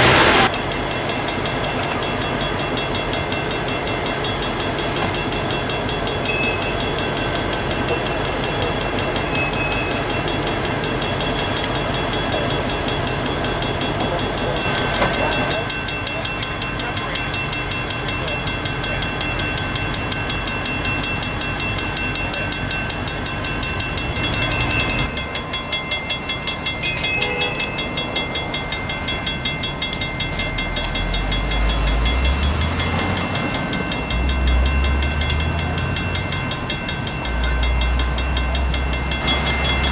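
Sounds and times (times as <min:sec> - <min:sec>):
diesel locomotive engine rumble: 0:00.0 - 0:39.9
high pulsing ringing tones: 0:00.0 - 0:39.9.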